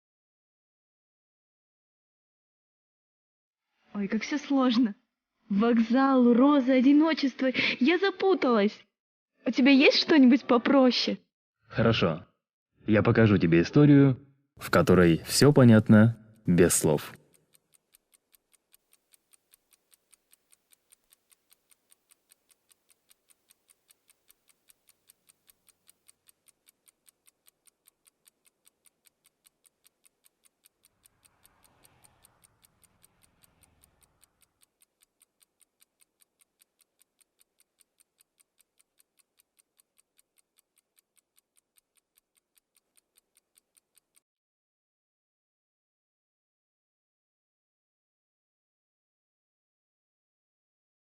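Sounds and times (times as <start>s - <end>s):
faint ticking: 14.6s - 44.3s.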